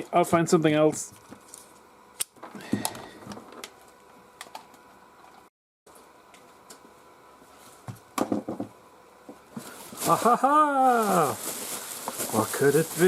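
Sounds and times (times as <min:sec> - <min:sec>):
objects knocking and rustling: 0:07.8 - 0:10.3, 0:11.4 - 0:13.0.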